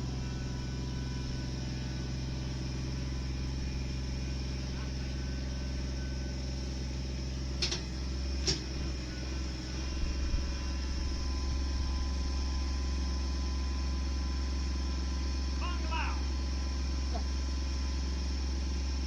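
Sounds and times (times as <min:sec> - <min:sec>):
engine running steadily: 0:00.0 - 0:19.0.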